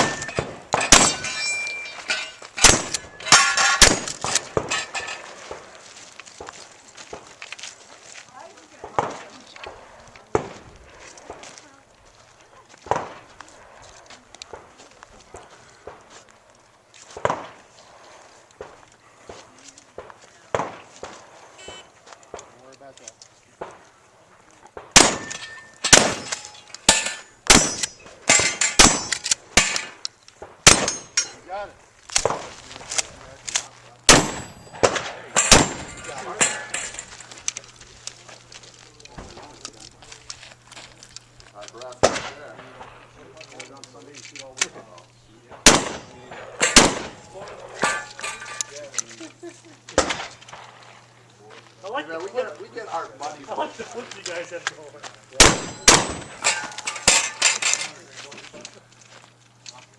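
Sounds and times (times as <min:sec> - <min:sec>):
shotgun shots: 0:00.0 - 0:01.4, 0:02.6 - 0:05.7, 0:17.2 - 0:17.6, 0:24.8 - 0:31.2, 0:34.1 - 0:36.9, 0:42.0 - 0:42.8, 0:45.5 - 0:48.2, 0:50.0 - 0:50.7, 0:55.4 - 0:57.4
steel targets ringing: 0:00.0 - 0:05.2, 0:25.0 - 0:30.0, 0:30.7 - 0:31.5, 0:34.1 - 0:37.1, 0:55.4 - 0:57.7
light metal clanks: 0:00.0 - 0:05.3, 0:34.4 - 0:37.3, 0:47.8 - 0:49.1, 0:55.7 - 0:58.7.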